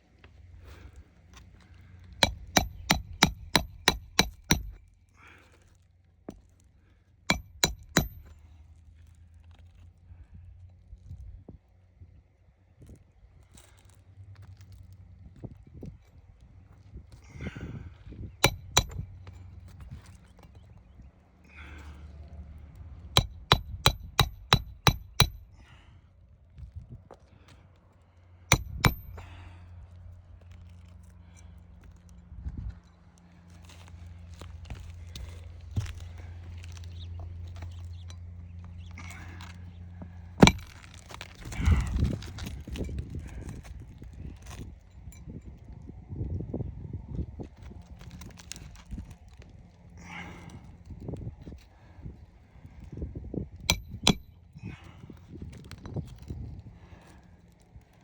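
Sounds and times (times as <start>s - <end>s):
hammer striking nails: 2.2s - 4.8s, 7.3s - 8.3s, 18.4s - 19.1s, 23.2s - 25.5s, 28.5s - 29.3s, 40.4s - 41.6s, 53.7s - 54.4s.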